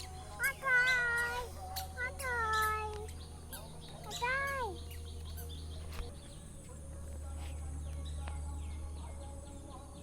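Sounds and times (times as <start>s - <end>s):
small birds chirping: 0.0s - 10.0s.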